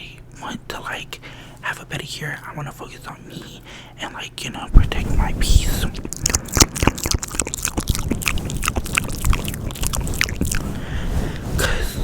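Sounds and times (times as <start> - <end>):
steady low rumble: 1.8 - 12.0
lip and tongue clicks: 5.8 - 10.8.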